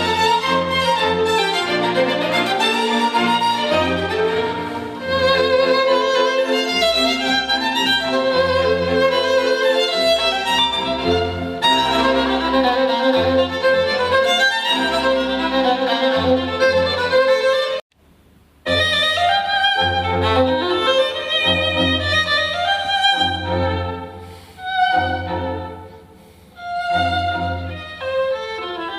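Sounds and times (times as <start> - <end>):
violin music over pulsing bass: 0.0 - 17.8.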